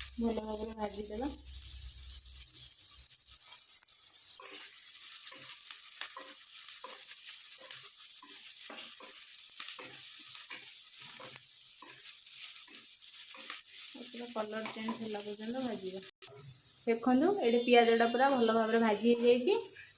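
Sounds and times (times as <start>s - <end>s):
onions sizzling in a pan: 0.0s - 19.9s
spoon stirring and scraping: 0.8s - 16.5s.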